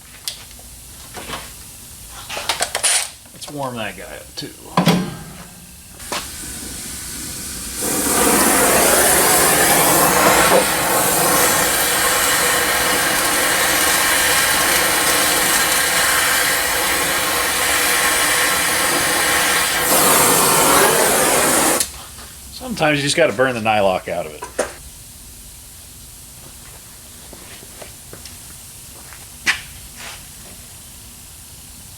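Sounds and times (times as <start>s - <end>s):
torch flame hissing: 3.6s - 21.9s.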